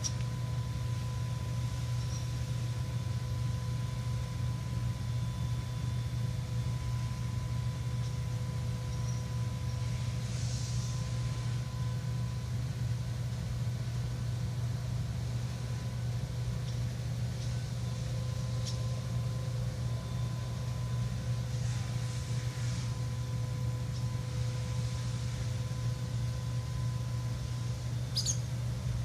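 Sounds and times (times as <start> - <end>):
steady low hum: 0.0 - 29.0
faint high-pitched chirps: 6.9 - 9.9, 28.0 - 28.6.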